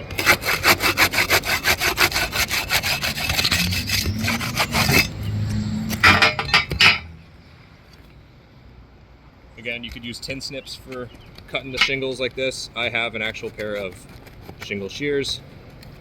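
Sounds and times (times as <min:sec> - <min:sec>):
tool scraping roof shingles: 0:00.0 - 0:05.2, 0:12.9 - 0:15.4.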